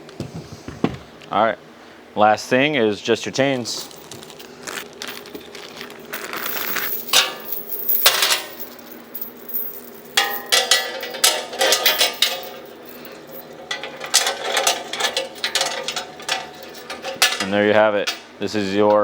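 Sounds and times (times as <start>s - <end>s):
metal chains clinking: 3.6s - 18.3s.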